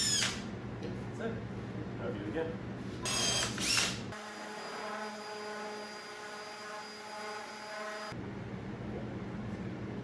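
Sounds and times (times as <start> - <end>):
power drill whining: 0.0 - 0.4, 3.0 - 8.1.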